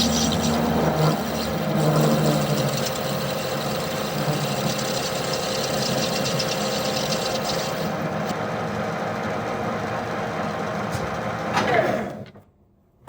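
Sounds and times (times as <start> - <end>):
lathe tool scratchy cutting: 0.0 - 8.3
metal lathe running: 0.0 - 10.7.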